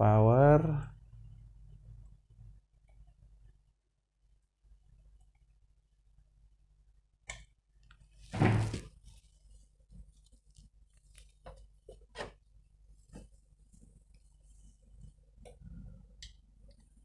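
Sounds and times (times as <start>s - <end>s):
handling knock or rustle: 8.3s - 8.9s.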